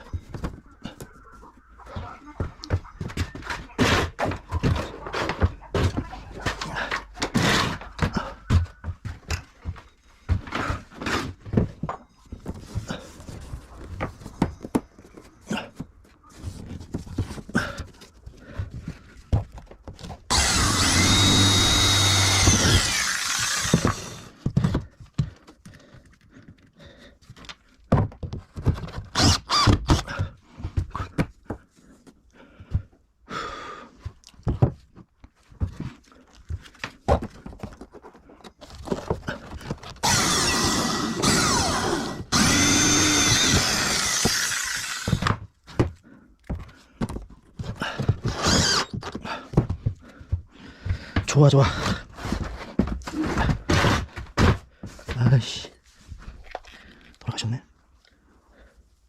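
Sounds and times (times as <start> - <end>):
power drill whining: 20.3 - 24.4, 29.1 - 30.1, 40.0 - 45.4, 48.2 - 49.2.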